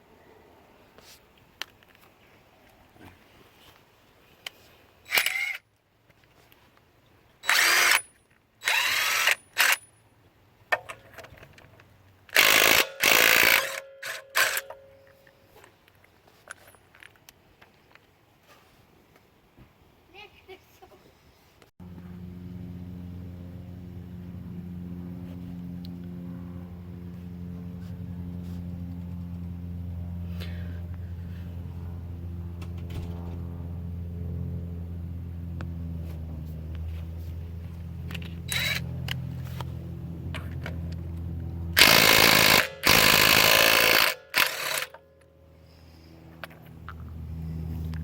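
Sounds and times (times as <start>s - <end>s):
motor humming: 32.1s - 44.8s.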